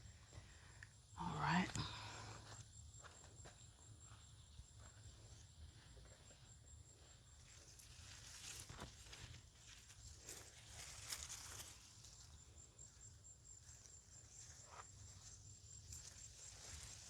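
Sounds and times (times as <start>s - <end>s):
soft rustles: 7.4s - 12.4s.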